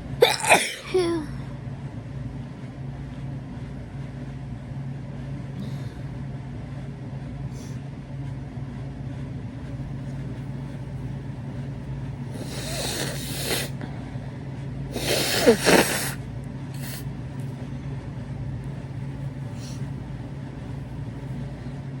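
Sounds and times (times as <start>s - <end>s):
person sneezing: 0.0s - 1.3s, 15.0s - 16.2s, 16.8s - 17.0s
steady low hum: 0.0s - 22.0s
short sniffs: 12.3s - 13.8s, 14.9s - 16.2s, 16.8s - 17.1s.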